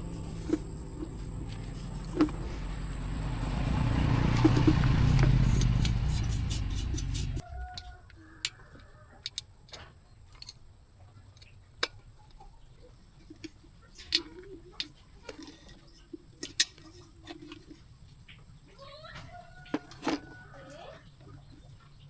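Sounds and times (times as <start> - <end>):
faint low hum: 0.0 - 7.8.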